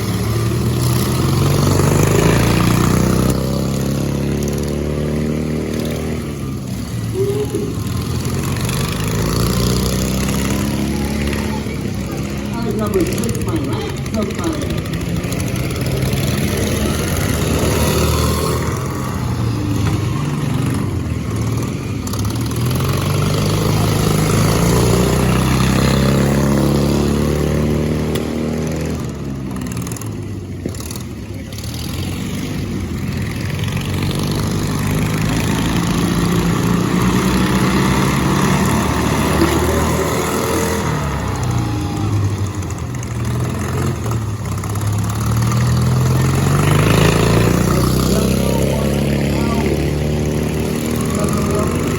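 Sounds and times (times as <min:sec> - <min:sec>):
lawn mower engines revving: 0:00.0 - 0:51.9.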